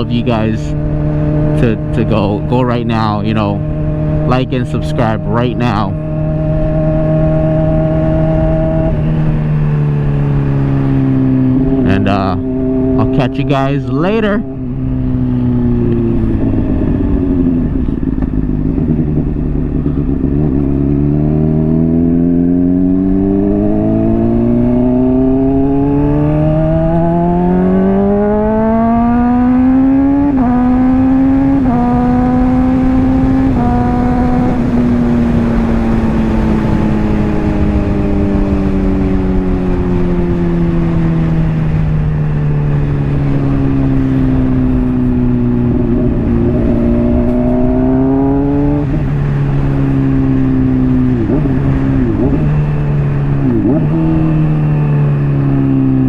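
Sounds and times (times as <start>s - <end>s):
motorcycle engine accelerating: 0.0s - 56.0s
motorcycle gear upshifts: 43.9s - 49.2s.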